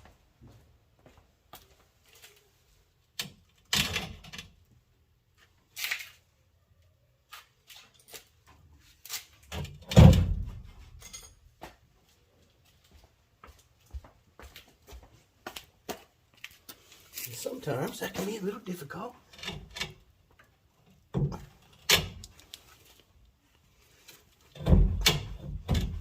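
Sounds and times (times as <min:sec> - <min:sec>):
metal clunks and knocks: 0:21.1 - 0:22.2, 0:24.5 - 0:26.0.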